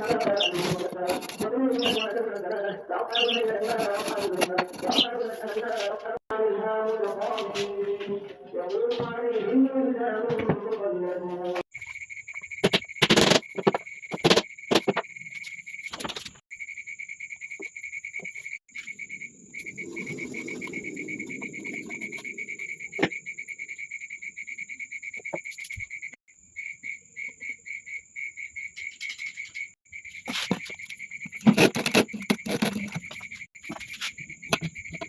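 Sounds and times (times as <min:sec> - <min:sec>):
insects trilling: 0:11.7 - 0:15.9, 0:16.5 - 0:35.0.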